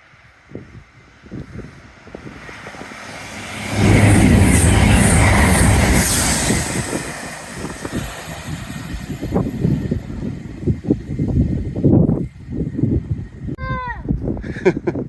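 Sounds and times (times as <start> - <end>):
train passing at speed: 0.1 - 11.8.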